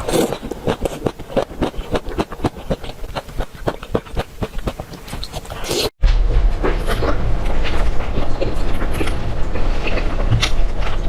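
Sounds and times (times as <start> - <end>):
chewing and biting food: 0.0 - 5.9
low rumbling background: 6.0 - 11.0.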